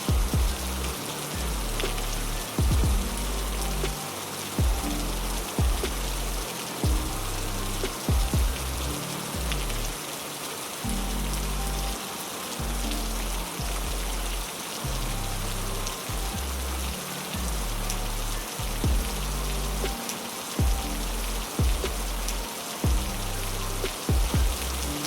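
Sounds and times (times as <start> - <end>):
heavy rain hiss: 0.0 - 25.0
low droning music: 0.0 - 25.0
sudden low thump: 2.6 - 3.2.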